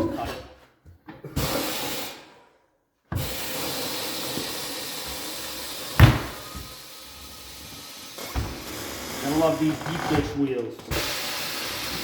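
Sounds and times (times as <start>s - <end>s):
sharp knock: 6.0s - 6.5s.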